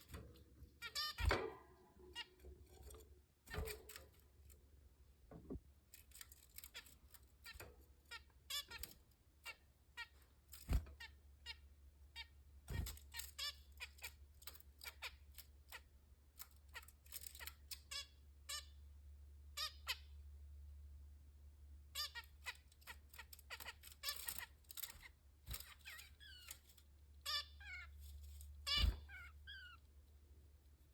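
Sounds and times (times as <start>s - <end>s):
zebra finches calling: 28.7s - 29.7s.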